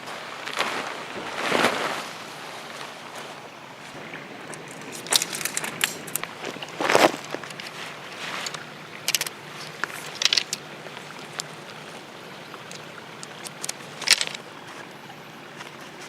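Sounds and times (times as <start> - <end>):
clicks and rustles of handling: 3.9 - 16.0.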